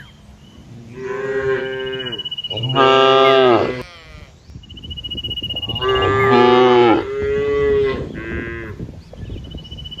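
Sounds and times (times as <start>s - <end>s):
cattle mooing: 0.9s - 4.3s, 5.7s - 8.8s.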